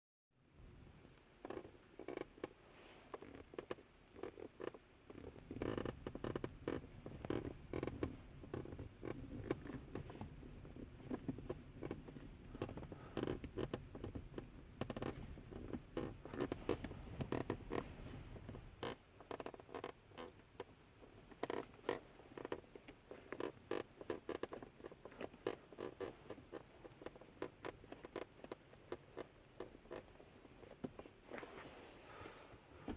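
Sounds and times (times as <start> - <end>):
low steady rumble: 0.4 - 32.9
gear shifter creaking and clicking: 1.4 - 31.6.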